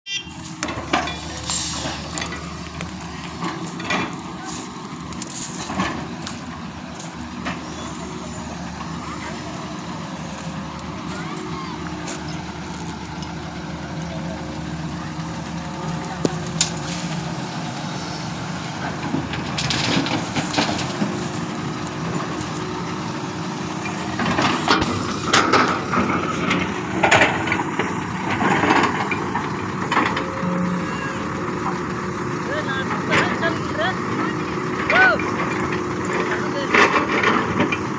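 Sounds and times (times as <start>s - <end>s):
heavy diesel engine running: 0.1s - 37.9s
soil and rock scraping: 0.3s - 37.9s.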